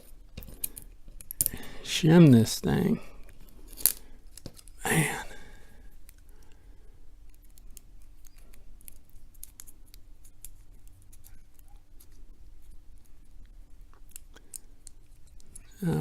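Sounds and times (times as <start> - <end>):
metallic clicks and scrapes in padlock: 0.0 - 1.6, 3.2 - 4.8, 7.2 - 15.8.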